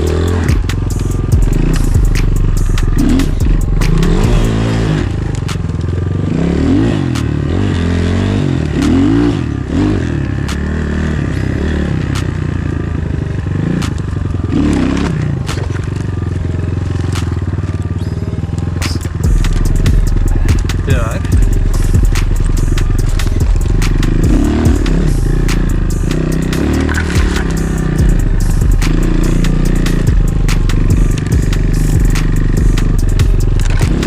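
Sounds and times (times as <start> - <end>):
dirt bike engine revving: 0.0 - 34.0
knocks and clicks: 26.7 - 29.1.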